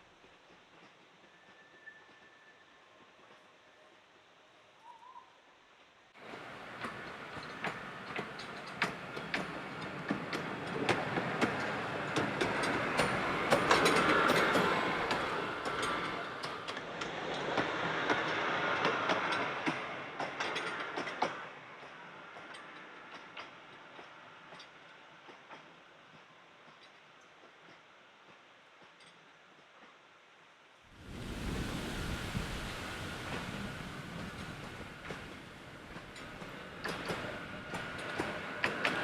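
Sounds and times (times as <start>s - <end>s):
train rumbling by: 6.2s - 26.6s, 30.9s - 39.0s
wheel clicks over rail joints: 6.2s - 30.0s, 34.4s - 39.0s.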